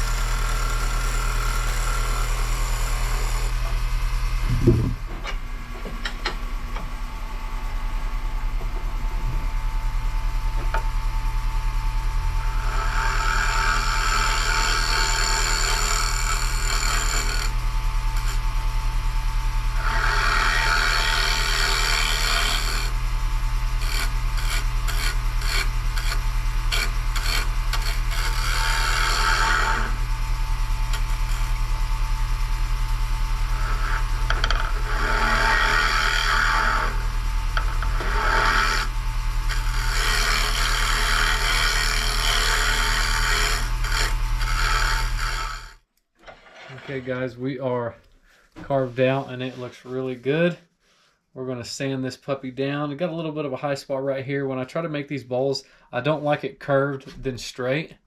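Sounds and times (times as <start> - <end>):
turning tool scraping wood: 0.0 - 3.8, 12.4 - 18.5, 19.7 - 47.4
wood lathe motor humming: 0.0 - 3.8, 12.0 - 45.8.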